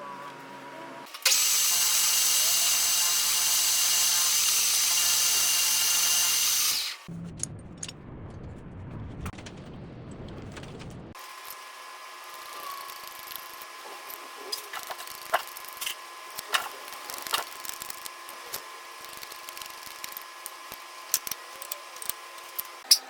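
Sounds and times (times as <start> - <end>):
metal lathe cutting hiss: 1.2 - 7.1
machine running: 11.0 - 23.0
scattered clicks: 12.3 - 23.0.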